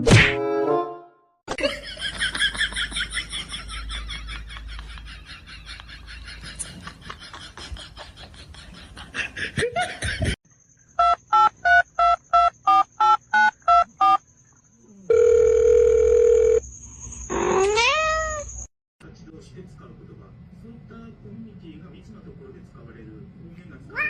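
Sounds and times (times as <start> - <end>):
steady phone tone: 15.1 - 16.6
cat meowing: 17.5 - 18.5.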